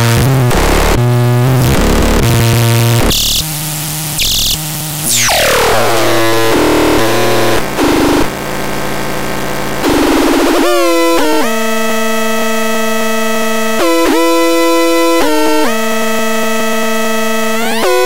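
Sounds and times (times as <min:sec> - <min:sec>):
falling synth sweep: 0:04.2 - 0:08.3
synthesized tones jumping in pitch: 0:04.2 - 0:08.3.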